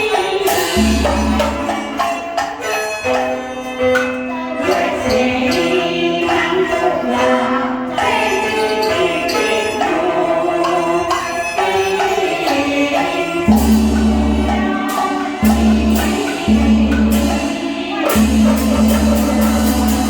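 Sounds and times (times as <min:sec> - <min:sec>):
opera ensemble playing: 0:00.0 - 0:20.0
opera singer: 0:04.4 - 0:20.0.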